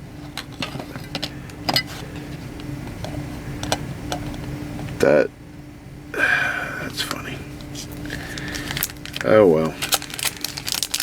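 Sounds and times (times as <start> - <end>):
steady low hum: 0.0 - 11.0
cards and packaging clicking: 8.0 - 11.0.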